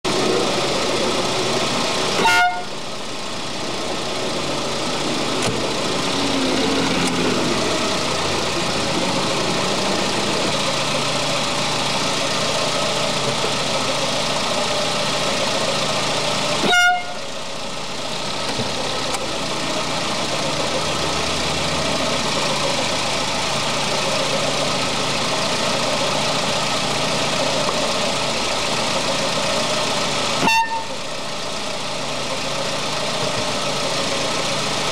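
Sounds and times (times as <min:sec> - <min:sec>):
steady running noise: 0:00.1 - 0:21.1
car horn toots: 0:02.1 - 0:02.8, 0:16.6 - 0:17.3, 0:30.4 - 0:31.0.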